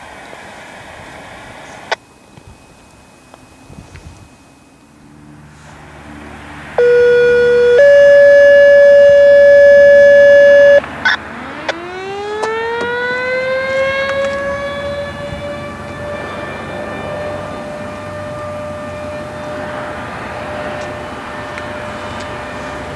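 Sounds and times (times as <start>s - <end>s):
civil defense siren winding up: 5.7s - 22.9s
two-tone electronic tone: 6.8s - 15.4s.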